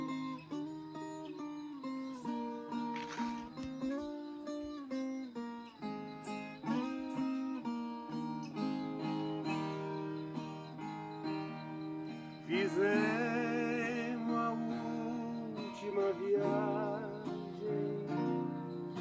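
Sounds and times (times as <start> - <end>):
picked string instrument melody: 0.0 - 19.0.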